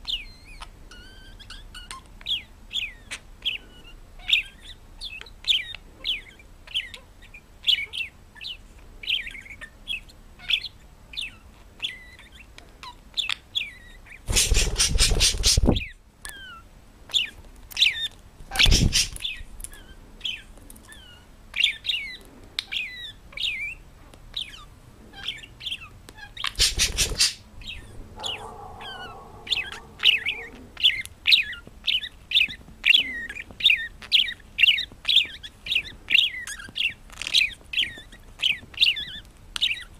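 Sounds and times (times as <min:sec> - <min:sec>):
parrot chirping: 0:00.0 - 0:39.9
wing flutter bursts: 0:14.3 - 0:15.8, 0:18.6 - 0:19.2, 0:26.6 - 0:27.4.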